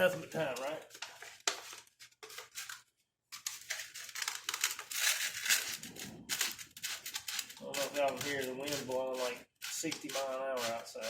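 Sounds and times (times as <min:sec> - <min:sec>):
sandpaper rasping on plastic: 0:04.8 - 0:11.0.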